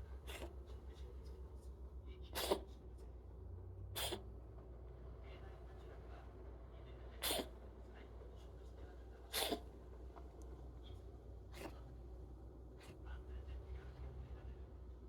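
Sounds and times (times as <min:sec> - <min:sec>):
cat sneezing: 0:00.2 - 0:00.6, 0:02.3 - 0:02.8, 0:04.0 - 0:04.3, 0:07.2 - 0:07.6, 0:09.2 - 0:09.8, 0:11.5 - 0:11.8.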